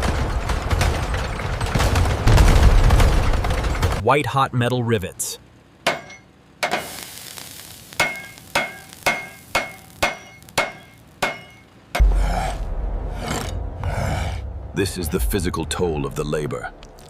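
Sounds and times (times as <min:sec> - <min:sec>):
hammer striking steel rivets: 0:05.8 - 0:06.9, 0:08.0 - 0:11.8
loud low rumble: 0:12.0 - 0:17.0.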